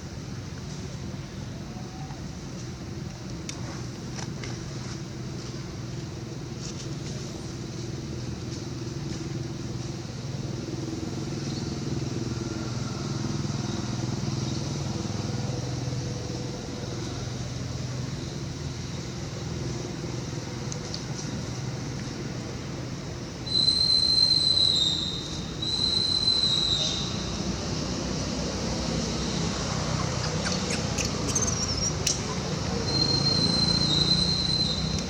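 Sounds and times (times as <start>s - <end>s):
engine humming: 25.0s - 35.0s.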